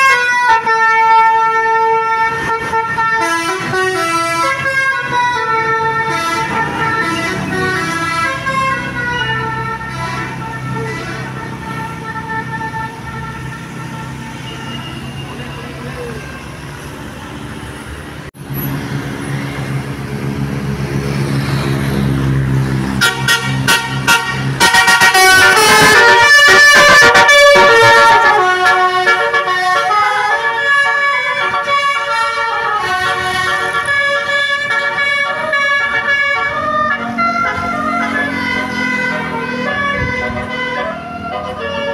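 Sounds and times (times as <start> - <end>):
bus horn playing a tune: 0.0 - 15.2, 22.9 - 41.9
bus engine running: 15.1 - 41.9.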